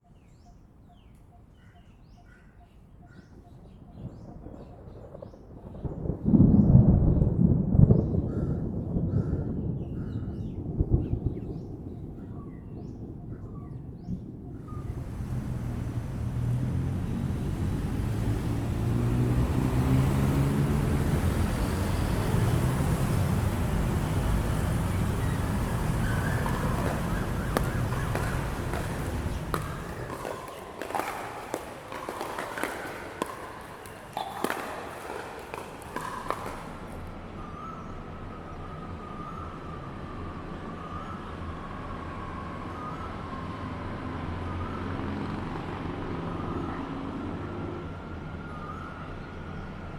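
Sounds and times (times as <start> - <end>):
distant city hum: 8.8 - 49.9
paddles hitting balls: 14.6 - 37.4
heavy city traffic rumbling: 14.6 - 49.9
faint siren wavering: 14.7 - 30.5, 37.5 - 49.9
crowd chatter: 21.2 - 34.4.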